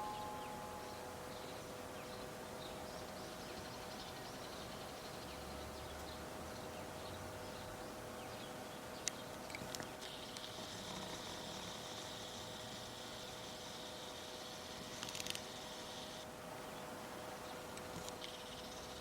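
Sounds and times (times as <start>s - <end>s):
bird chirps: 0.0s - 6.8s
steady faint hum: 0.0s - 19.0s.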